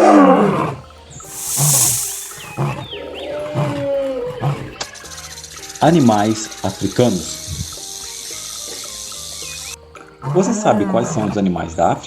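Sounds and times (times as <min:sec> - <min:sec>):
burst of hiss: 0:01.3 - 0:02.7.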